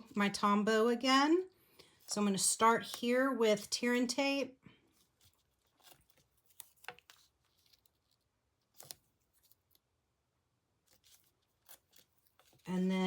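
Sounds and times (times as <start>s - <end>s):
soft rustles and clicks of tape: 4.7s - 9.9s, 10.8s - 12.9s.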